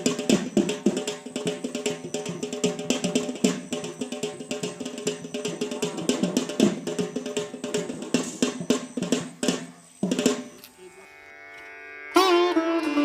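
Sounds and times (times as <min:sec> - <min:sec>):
fast hand-drum rhythm: 0:00.0 - 0:10.6
held steady tones: 0:00.0 - 0:13.0
string melody with bending notes: 0:10.5 - 0:13.0.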